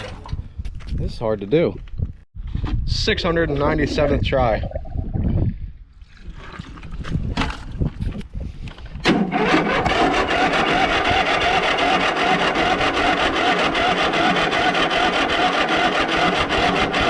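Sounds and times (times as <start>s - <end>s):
electric starter whine: 9.0s - 17.0s
lawn mower engine cranking: 9.0s - 17.0s.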